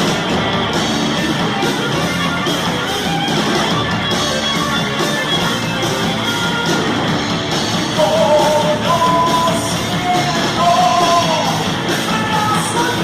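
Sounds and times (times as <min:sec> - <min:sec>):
distorted electric guitars: 0:00.0 - 0:13.0
heavy metal band playing live: 0:00.0 - 0:13.0
person singing: 0:07.9 - 0:13.0.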